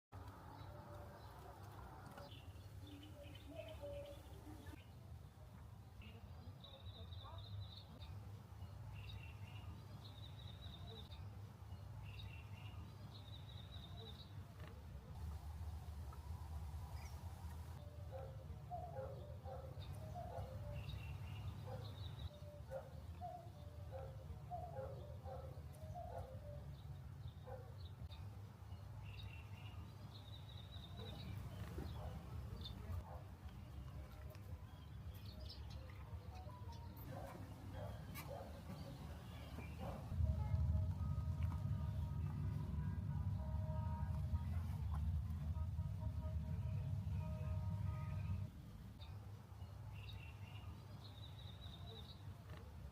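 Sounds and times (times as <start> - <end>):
songbirds chirping: 0.2 - 52.9
low background rumble: 37.1 - 48.8.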